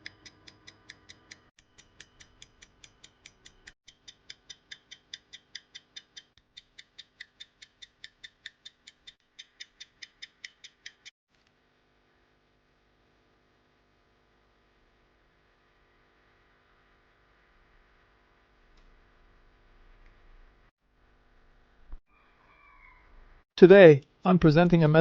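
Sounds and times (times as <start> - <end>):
pocket watch ticking: 0.0 - 11.1.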